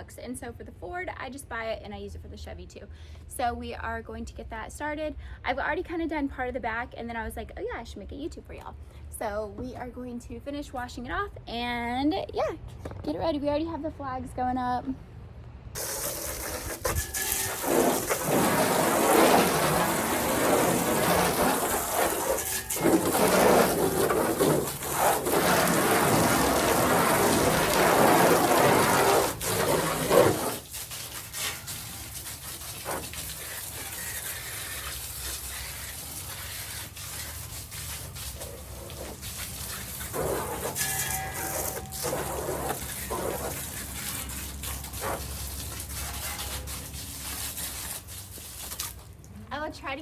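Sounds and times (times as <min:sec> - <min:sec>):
hose water spraying on truck: 0:15.8 - 0:49.3.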